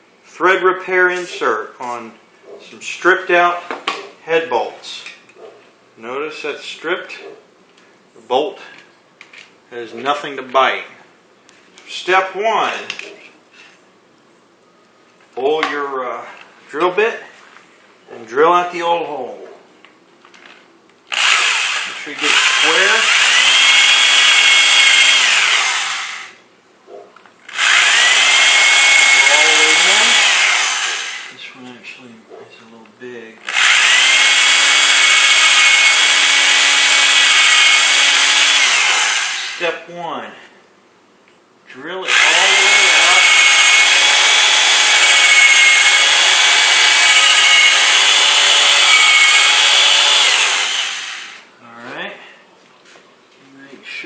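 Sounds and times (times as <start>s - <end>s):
electric drill whining: 21.1s - 26.4s, 27.5s - 31.4s, 33.4s - 39.7s, 42.1s - 51.5s.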